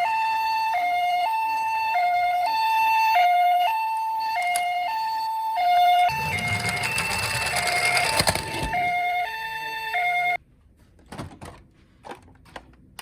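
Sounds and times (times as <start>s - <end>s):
toy two-tone siren: 0.0s - 10.4s
toy rattling down slope: 6.1s - 9.0s.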